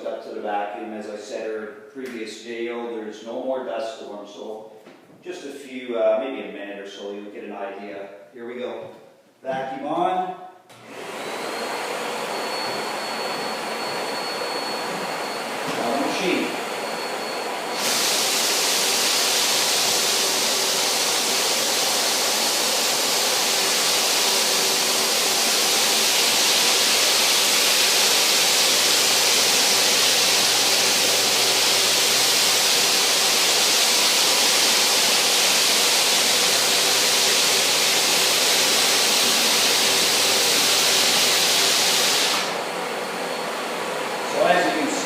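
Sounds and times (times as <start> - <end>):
dust extraction vacuum: 10.7 - 45.0
floor sander running: 10.7 - 45.0.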